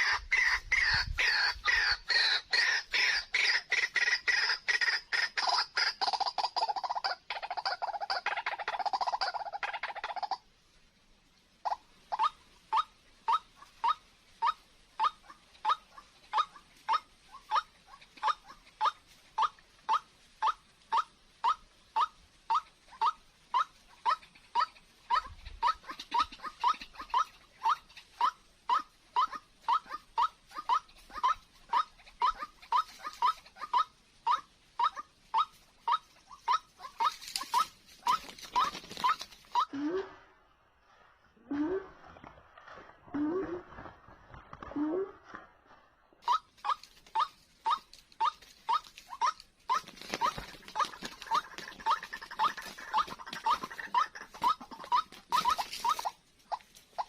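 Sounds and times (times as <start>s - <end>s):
waterhen calling: 0.0s - 10.5s, 11.6s - 45.3s, 46.2s - 57.0s
rustling: 22.5s - 39.8s, 41.9s - 57.0s.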